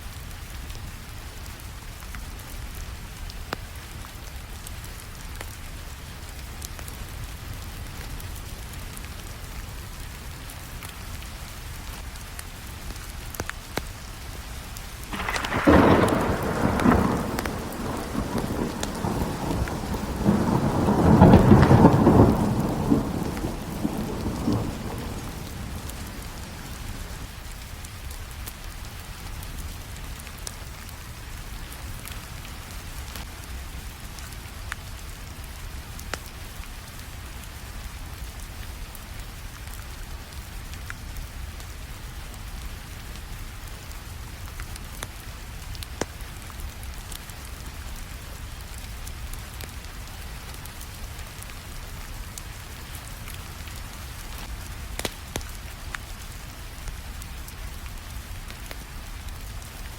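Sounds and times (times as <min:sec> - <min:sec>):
steady rainfall: 0:00.0 - 0:59.9
thunder rumbling: 0:15.1 - 0:27.3.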